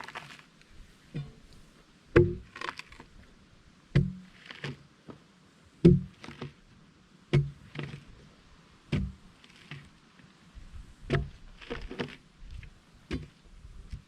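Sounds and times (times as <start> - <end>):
heavy strikes on wood: 2.2 - 2.5, 3.9 - 4.3, 5.8 - 6.3, 7.3 - 7.6.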